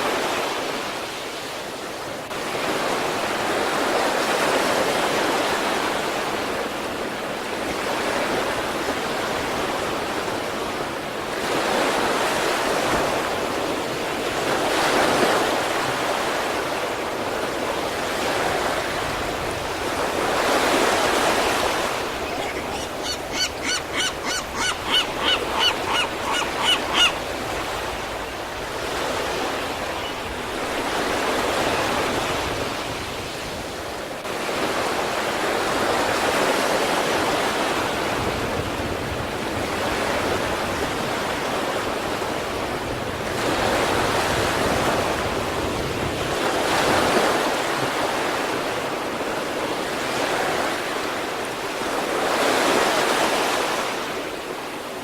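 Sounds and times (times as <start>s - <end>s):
sea waves breaking on shore: 0.0s - 55.0s
short pitched calls: 22.1s - 27.4s.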